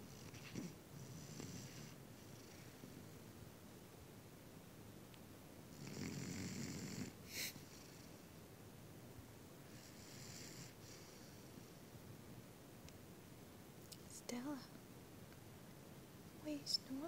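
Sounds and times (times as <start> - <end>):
faint snoring: 0.0 - 3.0, 5.7 - 8.2, 9.7 - 11.6.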